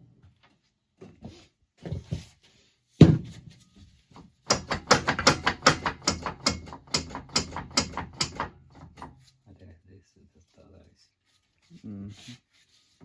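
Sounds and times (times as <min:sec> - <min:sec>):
hammer knocking on metal: 0:04.5 - 0:09.2.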